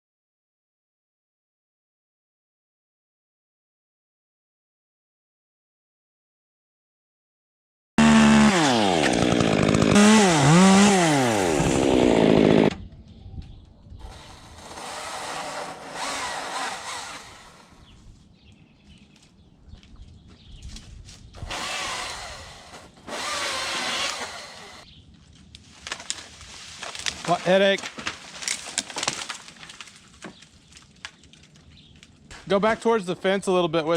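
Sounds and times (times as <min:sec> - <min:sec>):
chainsaw revving loudly: 0:08.0 - 0:12.7, 0:14.2 - 0:17.8, 0:21.4 - 0:24.8
distant chainsaw cutting: 0:08.0 - 0:12.8, 0:14.1 - 0:17.8, 0:21.4 - 0:24.8.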